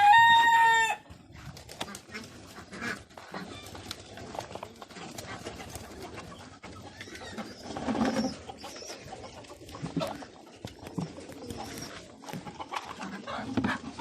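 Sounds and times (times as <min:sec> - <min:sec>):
rooster crowing: 0:00.0 - 0:01.0
bird calls: 0:01.9 - 0:14.0.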